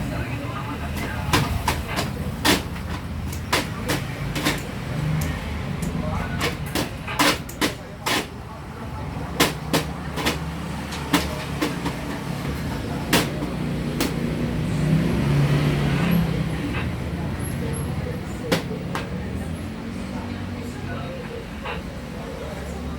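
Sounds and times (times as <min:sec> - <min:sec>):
faint voices: 0:00.0 - 0:22.9
clicks and knocks of tools: 0:00.9 - 0:08.4, 0:09.3 - 0:14.3.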